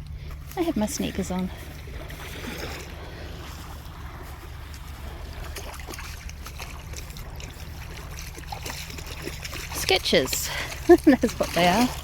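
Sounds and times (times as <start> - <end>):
gentle water at shoreline: 0.0 - 12.0
wind rumbling on microphone: 0.0 - 12.0.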